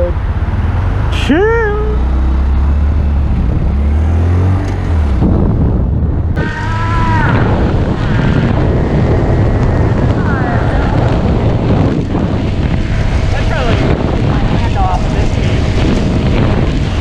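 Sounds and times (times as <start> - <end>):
wind noise on microphone: 1.8 - 17.0
motorcycle engine running: 5.0 - 17.0.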